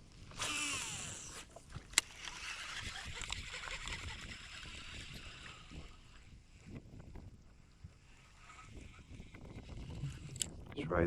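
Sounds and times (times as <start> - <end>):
fishing line whizzing off reel: 0.3 - 6.4, 8.0 - 10.6
sharp reel click: 0.4 - 5.8.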